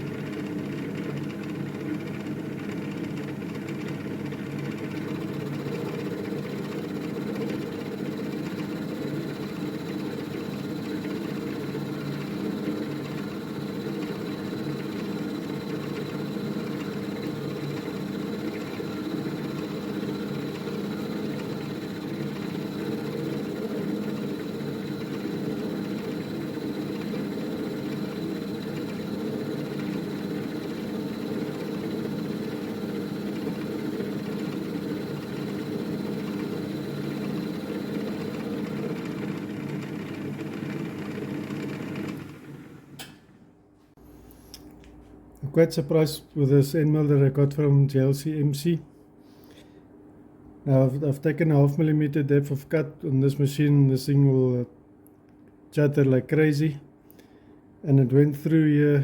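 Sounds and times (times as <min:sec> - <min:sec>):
milling machine cutting metal: 0:05.1 - 0:42.3.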